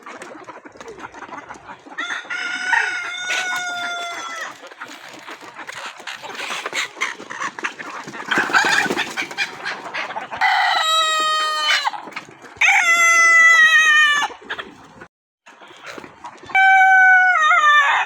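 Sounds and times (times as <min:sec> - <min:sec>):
chickens clucking: 0:00.0 - 0:18.0
rooster crowing: 0:02.0 - 0:04.6, 0:10.4 - 0:11.9, 0:16.5 - 0:18.0.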